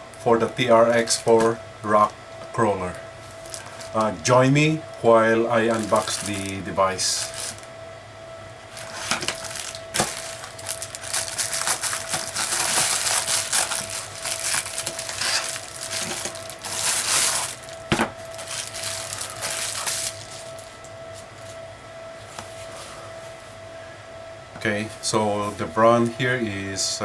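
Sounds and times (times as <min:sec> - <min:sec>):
wrapping crinkling and tearing: 0:02.9 - 0:04.3, 0:04.9 - 0:07.7, 0:08.7 - 0:21.6.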